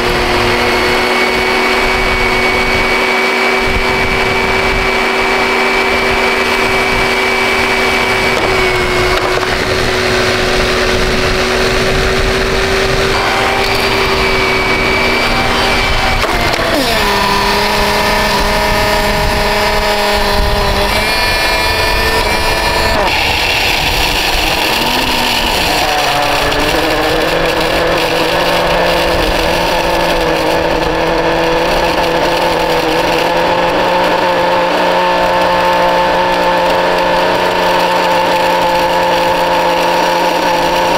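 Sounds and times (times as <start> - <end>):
vacuum cleaner motor whining: 0.0 - 40.9.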